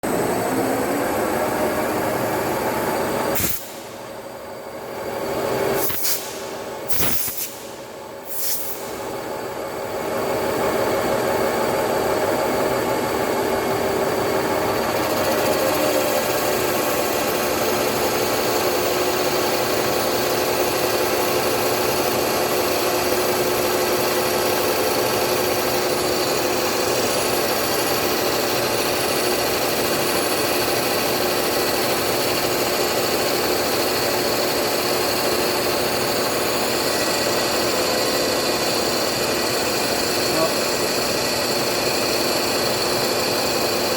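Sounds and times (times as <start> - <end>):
lathe mechanical whir: 0.0 - 43.9
broad hiss: 8.3 - 8.8.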